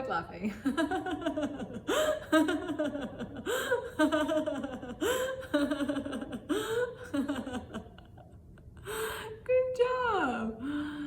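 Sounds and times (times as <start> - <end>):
woman laughing: 0.4 - 8.3.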